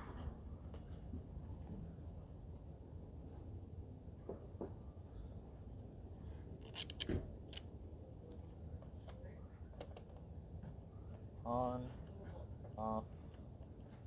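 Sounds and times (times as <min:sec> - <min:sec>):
clicks and rattles of saw parts: 0:06.6 - 0:07.6.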